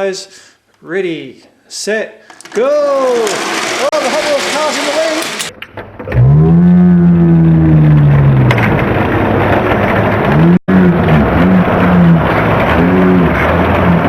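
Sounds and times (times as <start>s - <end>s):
racing car engine revving: 6.1s - 14.0s.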